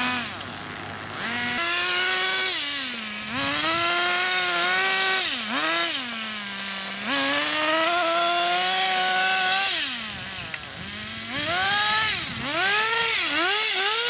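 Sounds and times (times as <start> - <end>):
rc car engine revving and idling: 0.0 - 14.0.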